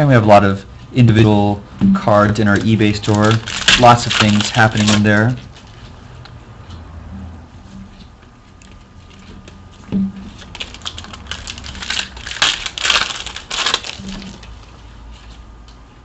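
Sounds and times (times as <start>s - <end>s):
cards clicking and rustling: 2.4s - 5.8s, 10.3s - 14.6s.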